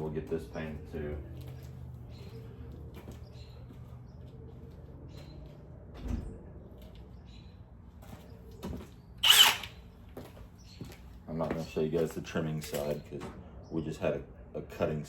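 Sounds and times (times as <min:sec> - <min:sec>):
power tool burst: 0:09.2 - 0:09.8.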